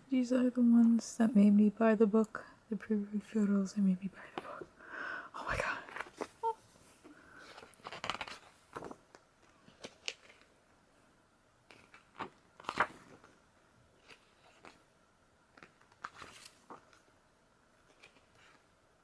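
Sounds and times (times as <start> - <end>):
book pages turning: 5.6 - 6.4, 7.3 - 10.6, 11.6 - 17.1, 17.8 - 18.8.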